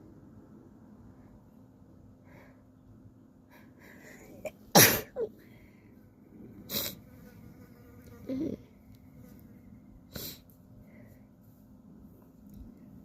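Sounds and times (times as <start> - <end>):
person sneezing: 4.8 - 5.3.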